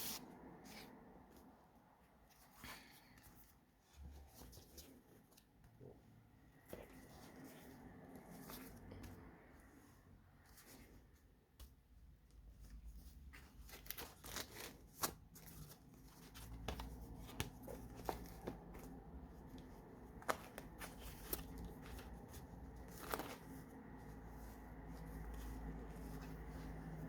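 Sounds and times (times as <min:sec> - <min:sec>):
paper pages turning: 0:19.5 - 0:27.0.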